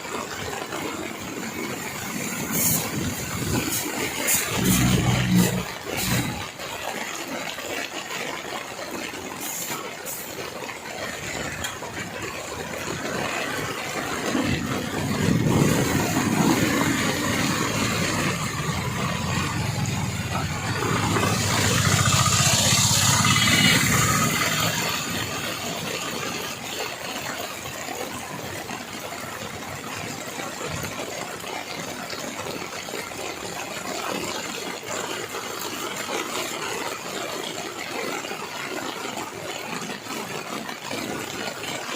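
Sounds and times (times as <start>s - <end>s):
tyres hissing on wet road: 0.0s - 41.9s
vehicle engine passing: 1.6s - 6.7s, 13.6s - 26.6s.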